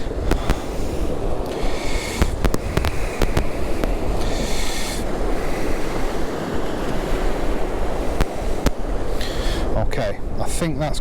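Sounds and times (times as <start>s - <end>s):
sharp clicks: 0.0s - 5.0s
surf and wind rushing: 0.0s - 11.0s.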